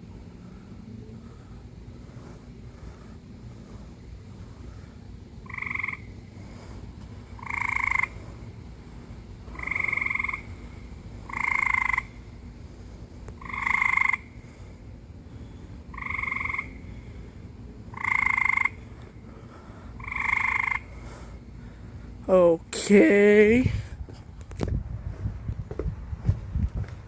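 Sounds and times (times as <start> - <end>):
low background rumble: 0.0 - 27.0
frog calling: 5.4 - 6.3, 7.3 - 8.3, 9.5 - 12.4, 13.4 - 14.5, 15.9 - 17.2, 17.9 - 19.0, 20.0 - 21.0.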